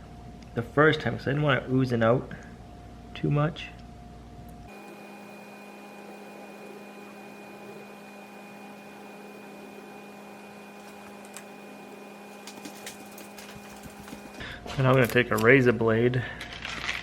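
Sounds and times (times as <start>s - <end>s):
machine hum with fixed tones: 0.0s - 17.0s
faint clicks and handling sounds: 12.3s - 15.6s, 16.3s - 17.0s.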